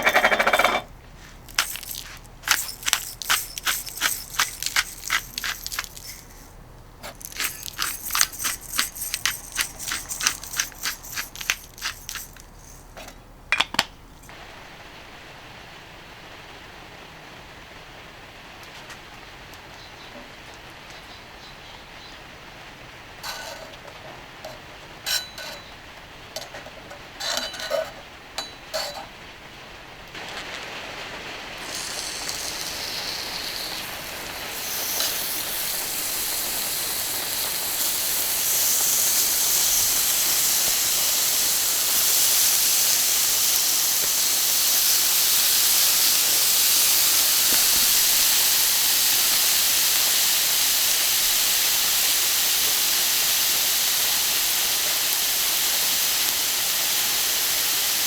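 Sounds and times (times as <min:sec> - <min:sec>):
utensils clinking: 0:00.0 - 0:14.3, 0:27.2 - 0:29.1, 0:31.6 - 0:48.6
meat sizzling on griddle: 0:01.1 - 0:13.0, 0:30.2 - 0:58.0.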